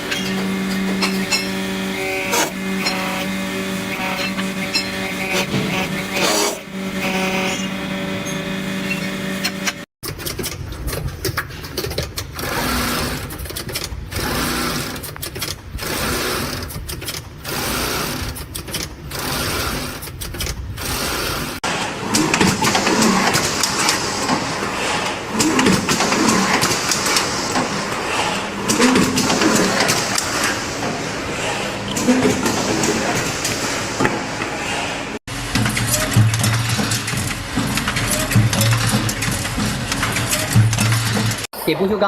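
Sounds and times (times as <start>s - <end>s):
machinery running in cycles: 0.0s - 9.9s, 20.8s - 41.5s
continuous machine noise: 0.0s - 41.5s.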